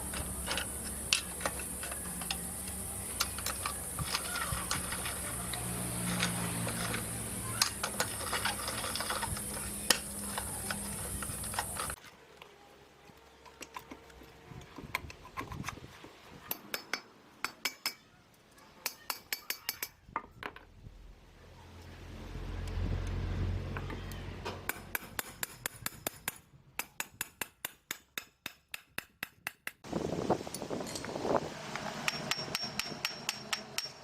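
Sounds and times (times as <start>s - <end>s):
metal tools clinking: 0.0s - 12.0s.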